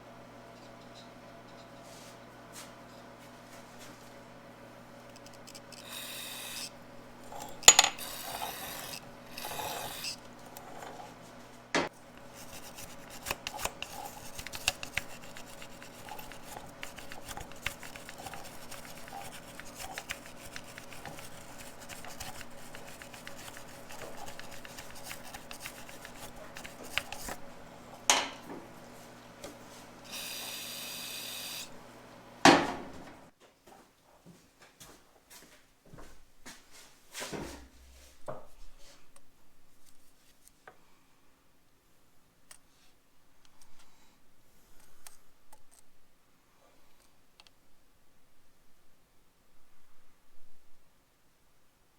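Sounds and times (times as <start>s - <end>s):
tools scraping metal parts: 5.1s - 11.2s, 12.1s - 28.4s.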